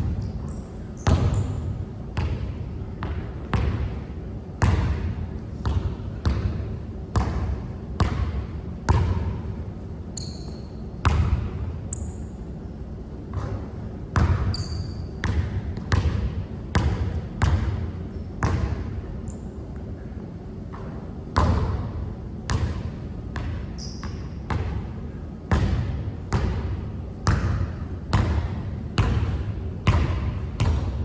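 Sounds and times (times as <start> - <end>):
basketball bouncing on hard court: 1.0 - 4.0, 4.6 - 9.4, 10.2 - 11.6, 13.3 - 17.8, 18.4 - 18.9, 20.7 - 21.9, 22.5 - 24.8, 25.5 - 31.0
short high squeaks: 10.2 - 10.8.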